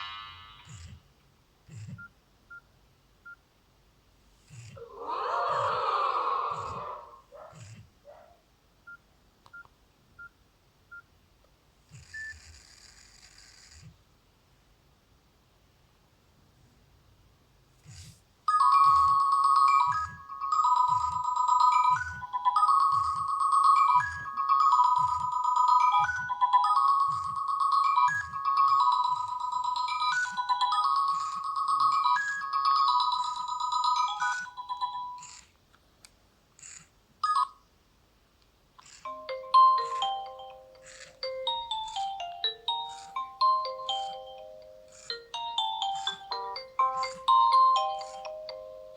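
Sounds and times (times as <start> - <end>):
bell-like ringtone melody: 18.5 - 35.3, 39.1 - 48.9.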